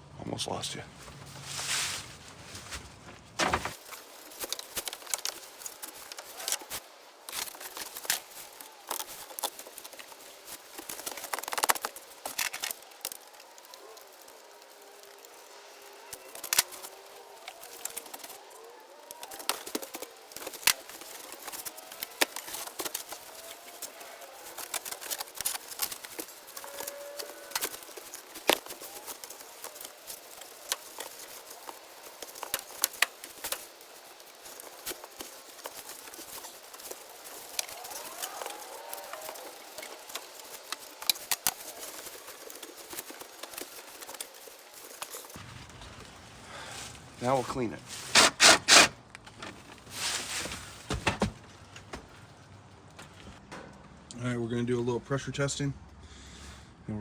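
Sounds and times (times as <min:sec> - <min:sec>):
hand tools clicking and knocking: 0:48.1 - 0:49.8.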